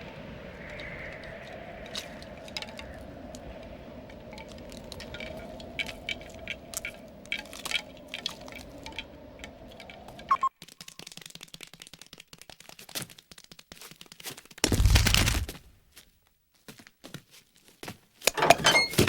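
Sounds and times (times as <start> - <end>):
small clicks and ticks: 0.0 - 14.6.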